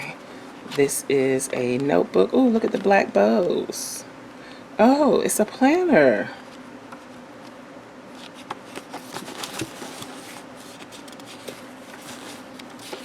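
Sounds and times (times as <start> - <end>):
paper pages rustling: 8.1 - 13.0.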